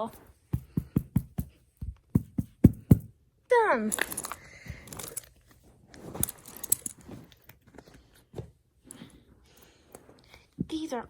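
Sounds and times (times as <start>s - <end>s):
rustling: 3.9s - 9.3s.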